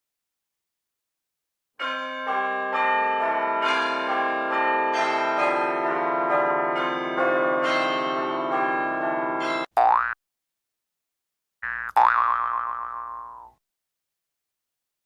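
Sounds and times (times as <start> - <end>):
church bells ringing a peal: 1.8 - 9.7.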